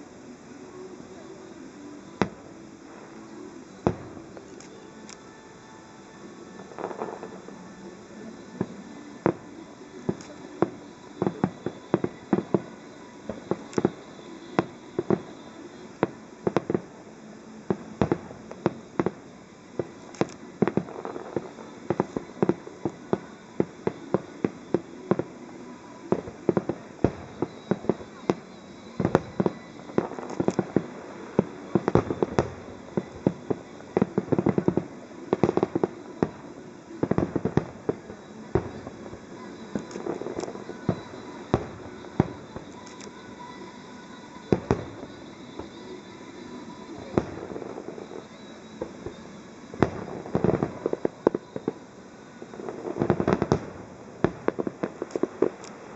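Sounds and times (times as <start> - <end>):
firework shells bursting: 2.2 - 51.7.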